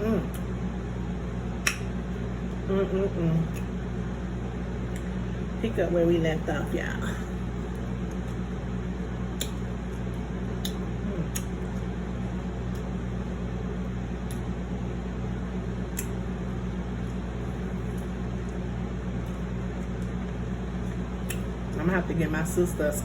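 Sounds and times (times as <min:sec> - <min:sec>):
low background hum: 0:00.0 - 0:23.0
mouth clicks while eating: 0:01.6 - 0:01.9, 0:09.3 - 0:09.6, 0:10.6 - 0:11.6, 0:15.9 - 0:16.2, 0:20.9 - 0:21.5.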